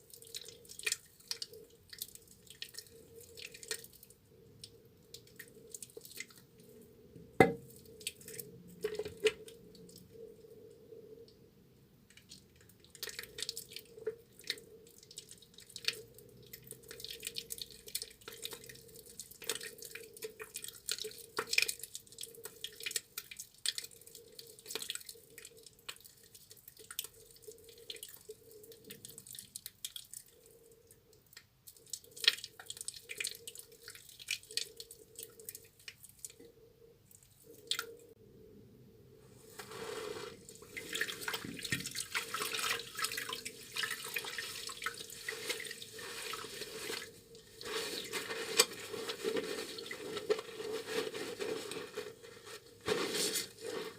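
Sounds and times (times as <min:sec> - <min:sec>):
wet drips and clicks: 0:00.0 - 0:06.5, 0:12.0 - 0:36.5, 0:37.1 - 0:38.1
wet squishing of lather: 0:00.0 - 0:06.5, 0:12.2 - 0:30.6, 0:31.6 - 0:36.4, 0:39.7 - 0:53.9.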